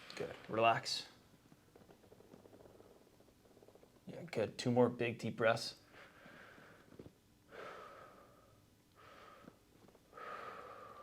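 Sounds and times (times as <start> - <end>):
person breathing deeply: 7.5 - 11.0.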